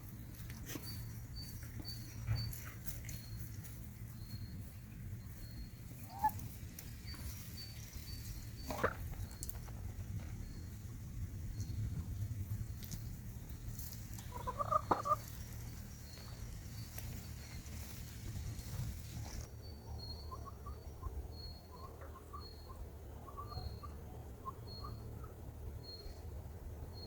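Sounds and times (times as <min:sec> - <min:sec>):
steady low rumble: 0:00.0 - 0:21.7
soft chirps: 0:00.1 - 0:26.3
chicken calling: 0:05.9 - 0:07.4, 0:08.6 - 0:09.5, 0:14.1 - 0:15.7.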